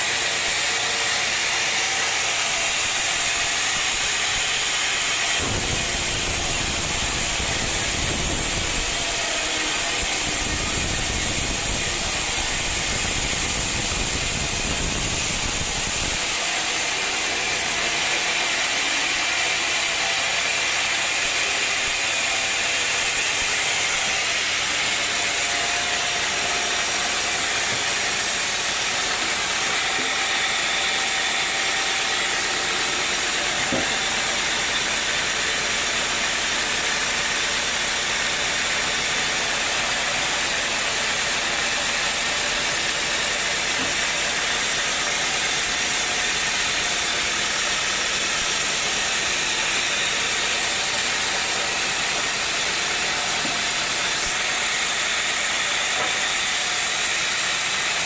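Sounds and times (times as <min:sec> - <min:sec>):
machinery hissing: 0:05.4 - 0:16.2.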